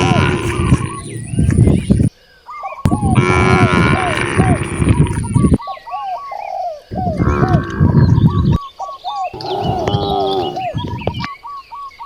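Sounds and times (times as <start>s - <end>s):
cattle mooing: 0.0s - 1.1s, 3.0s - 5.4s, 6.9s - 8.4s, 9.4s - 11.3s
bird calling in quick notes: 9.4s - 11.3s.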